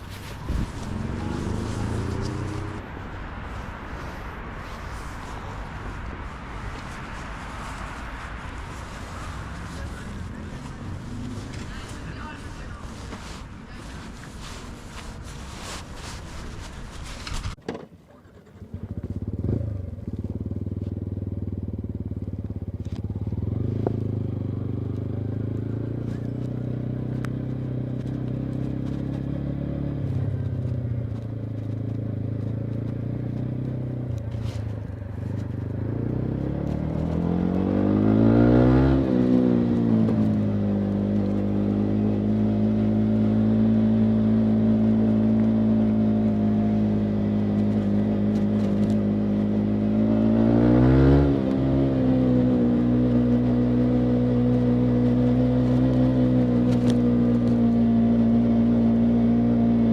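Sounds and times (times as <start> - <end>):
motorcycle engine idling and revving: 0.0 - 59.9.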